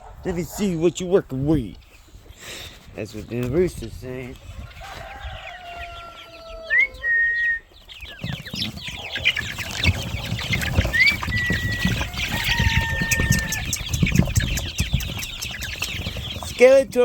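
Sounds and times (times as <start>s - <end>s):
chickens clucking: 0.0s - 17.0s
rooster crowing: 4.6s - 7.2s, 11.4s - 13.7s.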